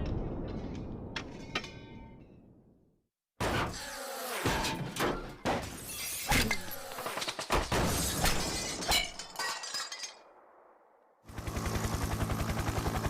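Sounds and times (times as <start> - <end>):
glass shattering: 5.7 - 10.4.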